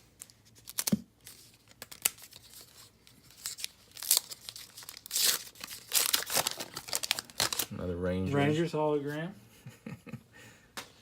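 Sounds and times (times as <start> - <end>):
cards being handled: 0.0 - 7.7
foil wrapper crinkling and tearing: 0.0 - 7.7.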